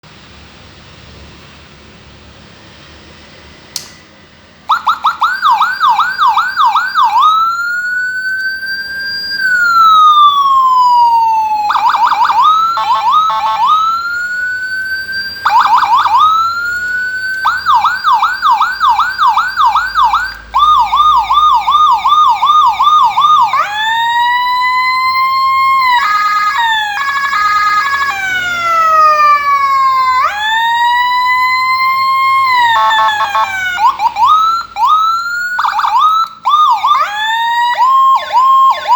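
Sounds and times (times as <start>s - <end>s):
click: 3.7s - 4.0s
electronic siren cycling tones: 4.7s - 38.9s.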